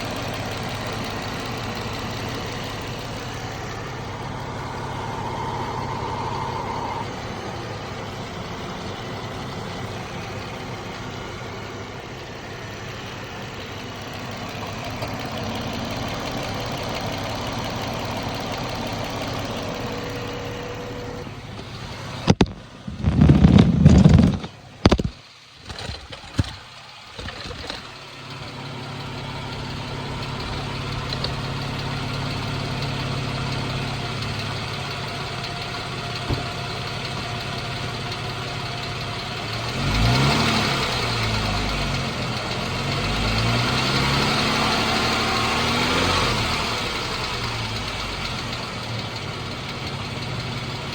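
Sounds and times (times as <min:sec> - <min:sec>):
car engine idling with ticking: 0:00.0 - 0:50.9
rustling: 0:21.6 - 0:27.9.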